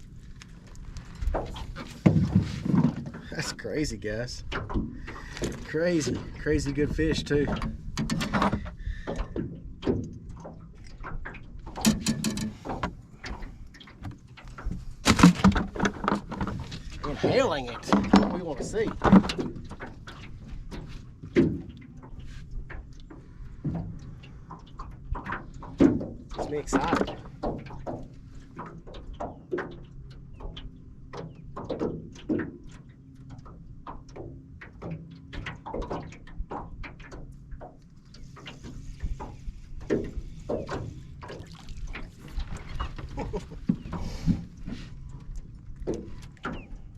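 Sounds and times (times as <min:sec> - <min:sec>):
irregular knocks and clicks: 0:04.4 - 0:17.0
clicks and knocks: 0:11.1 - 0:16.6.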